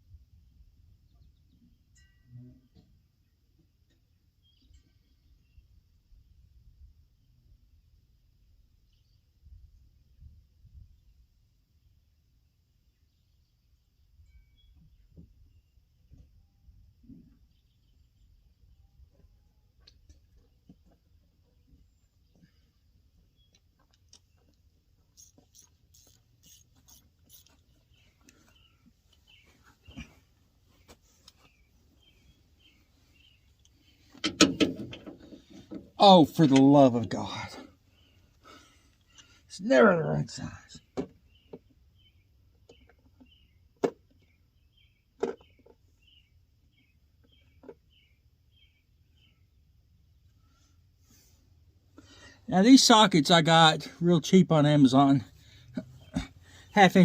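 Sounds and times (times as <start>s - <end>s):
faint bird chirps: 0.4s - 7.4s, 12.9s - 34.2s, 37.9s - 51.2s.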